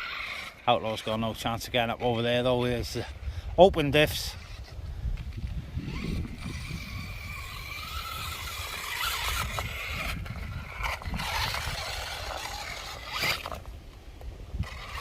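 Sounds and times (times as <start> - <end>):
electric motor whining: 0.0 - 1.1, 4.1 - 13.8, 14.4 - 15.0
wind rumble on microphone: 1.4 - 15.0.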